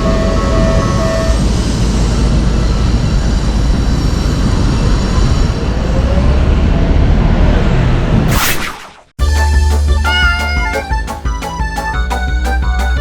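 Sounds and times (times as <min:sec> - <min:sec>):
train wheels rumbling on rails: 0:00.0 - 0:06.8.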